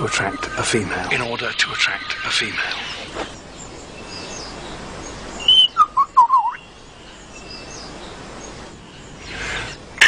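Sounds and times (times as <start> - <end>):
distant bird twitters: 0.0 - 10.0
lyrebird calling: 0.0 - 10.0.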